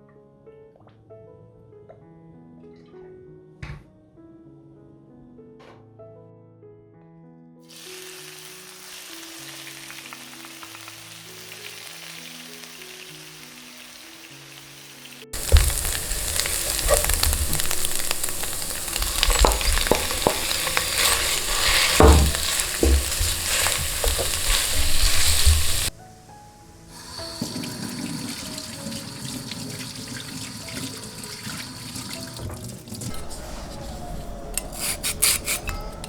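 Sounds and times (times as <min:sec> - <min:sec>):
faint background music: 0:00.0 - 0:36.0
food sizzling in a pan: 0:07.7 - 0:32.4
rubbing and scraping: 0:15.4 - 0:25.9, 0:32.9 - 0:36.0
clicks and scrapes: 0:34.5 - 0:36.0.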